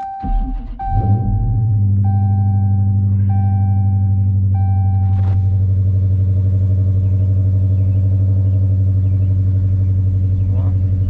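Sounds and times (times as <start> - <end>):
car warning chime: 0.0 - 5.6
car engine idling: 0.0 - 11.0.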